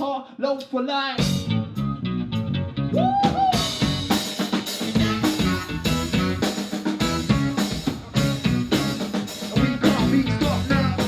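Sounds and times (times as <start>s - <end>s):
drum-kit beat: 1.2s - 1.5s, 3.0s - 11.0s
repeating bass notes: 1.2s - 11.0s.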